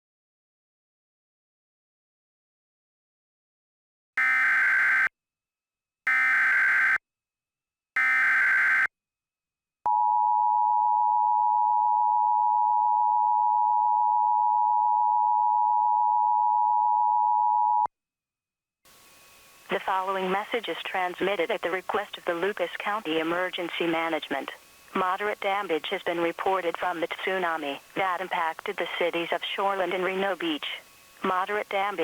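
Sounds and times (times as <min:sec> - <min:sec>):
digital header data bursts: 0:19.7 - 0:32.0.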